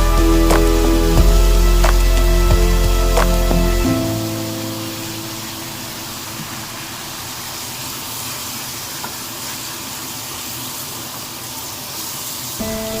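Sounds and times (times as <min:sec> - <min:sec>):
background music: 0:00.0 - 0:06.8, 0:12.6 - 0:13.0
meat sizzling in a pot: 0:06.6 - 0:13.0.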